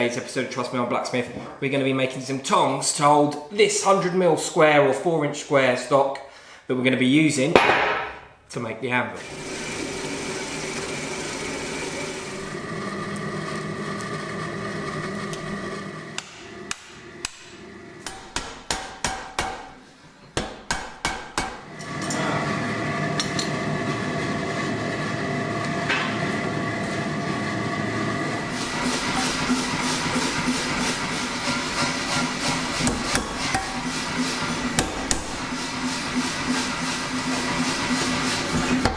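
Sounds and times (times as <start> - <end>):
hammer striking hot steel on anvil: 7.6 - 8.3, 16.2 - 19.8, 20.4 - 21.6, 32.1 - 33.9, 34.8 - 35.4.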